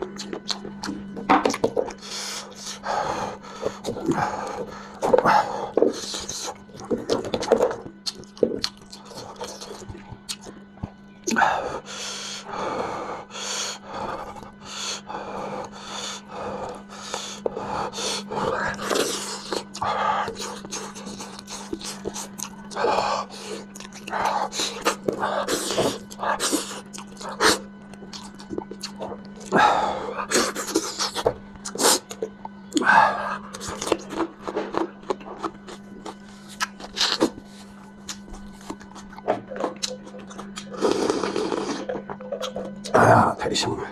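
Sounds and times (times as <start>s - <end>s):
person chewing: 0.0s - 43.4s
steady low hum: 0.0s - 43.9s
person slurping food: 40.6s - 42.5s.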